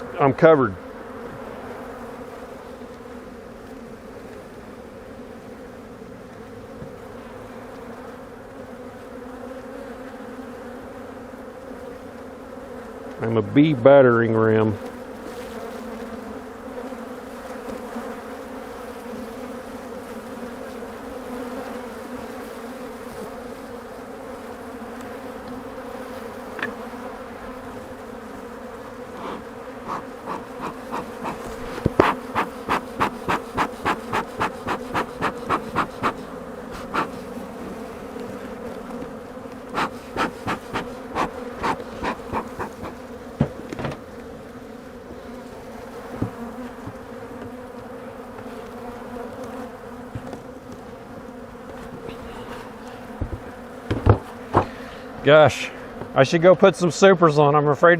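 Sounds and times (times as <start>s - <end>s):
bees buzzing: 0.0s - 57.9s
short sharp regular strokes: 29.2s - 37.3s, 39.7s - 43.6s.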